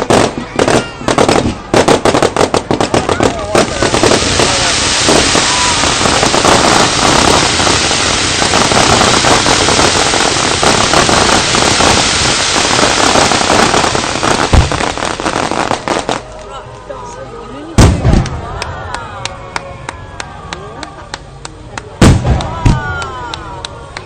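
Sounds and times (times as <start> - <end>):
fireworks crackling: 0.0 - 19.3, 21.1 - 24.0
deep firework thump: 14.4 - 14.9, 17.8 - 18.4, 22.0 - 22.9.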